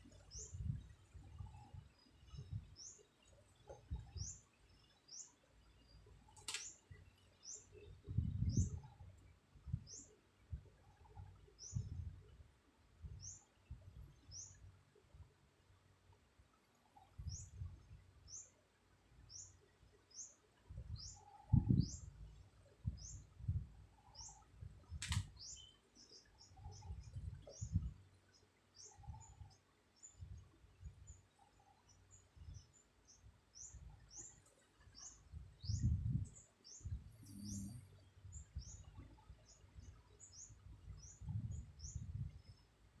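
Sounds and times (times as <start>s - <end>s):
sharp click: 6.4s - 6.8s, 25.0s - 25.3s
small bird chirping: 19.3s - 42.7s.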